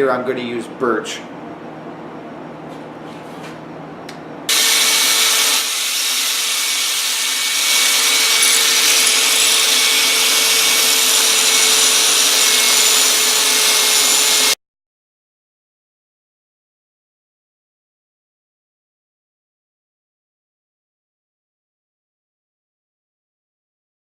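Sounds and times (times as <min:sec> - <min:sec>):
bench grinder grinding steel: 0:04.5 - 0:14.6.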